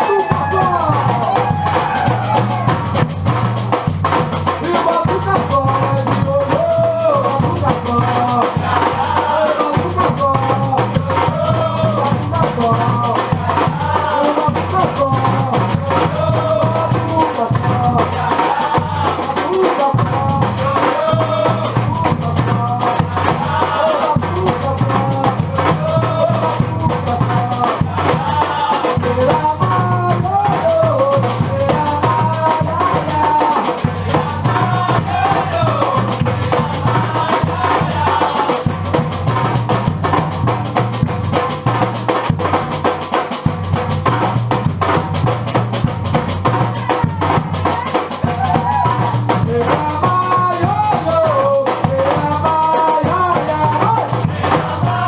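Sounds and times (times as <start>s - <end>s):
percussion group drumming: 0.0s - 55.0s.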